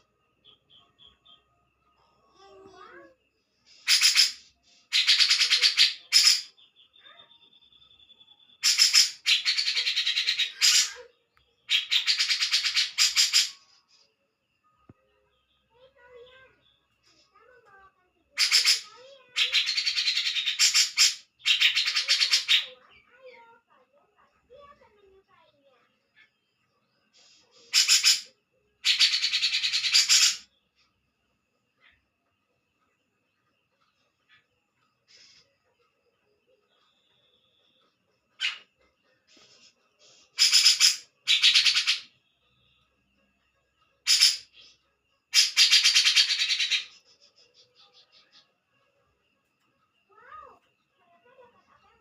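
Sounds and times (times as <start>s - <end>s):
bird harsh rapid chattering: 3.8s - 6.5s, 8.6s - 11.0s, 11.7s - 13.6s, 18.4s - 22.7s, 27.6s - 30.4s, 40.4s - 42.1s, 44.1s - 44.5s, 45.3s - 47.0s.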